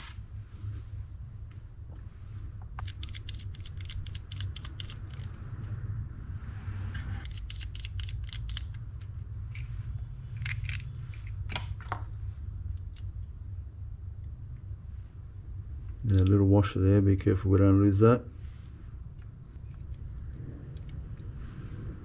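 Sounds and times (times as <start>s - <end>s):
low hum: 0.0s - 22.0s
small metal parts clicking: 2.8s - 5.7s, 7.2s - 9.7s, 10.3s - 12.0s.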